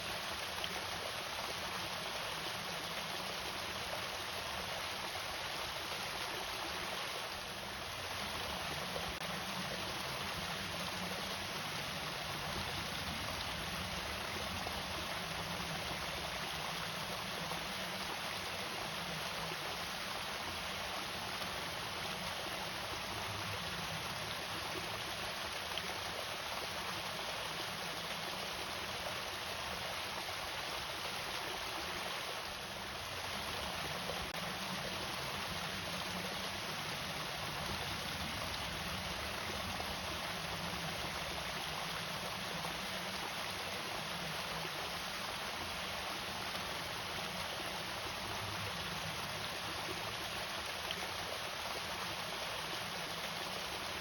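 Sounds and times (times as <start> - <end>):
water falling over small waterfall: 0.0 - 54.0.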